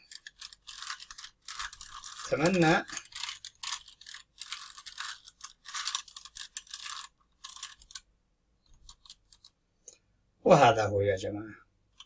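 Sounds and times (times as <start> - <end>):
puzzle cube twisting clicks: 0.1 - 8.0.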